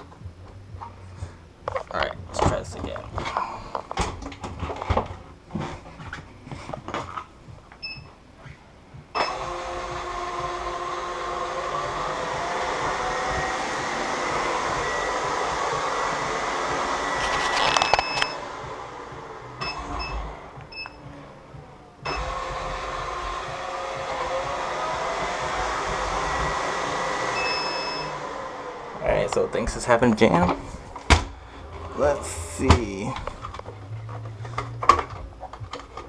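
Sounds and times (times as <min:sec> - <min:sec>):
robot vacuum motors whirring: 0:09.2 - 0:20.8, 0:22.0 - 0:29.4
short beeps: 0:27.4 - 0:28.1.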